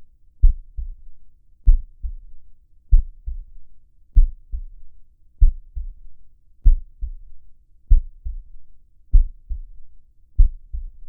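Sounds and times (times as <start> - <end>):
heartbeat double thump: 0.4 - 1.1, 1.7 - 2.3, 2.9 - 3.5, 4.2 - 4.8, 5.4 - 6.0, 6.6 - 7.3, 7.9 - 9.8, 10.4 - 11.0.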